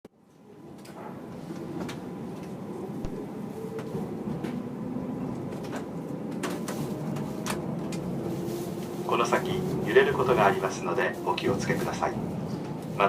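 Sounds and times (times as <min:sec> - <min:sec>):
train cabin rumble: 0:00.4 - 0:13.0
clicks and creaks from train car: 0:05.3 - 0:08.9.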